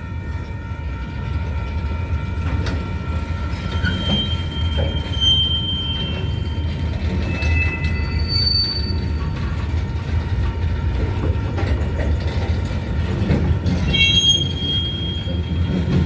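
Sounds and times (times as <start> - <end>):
train wheels rumbling: 0.0 - 16.0
wheels squealing on rail: 2.4 - 9.8, 13.2 - 16.0.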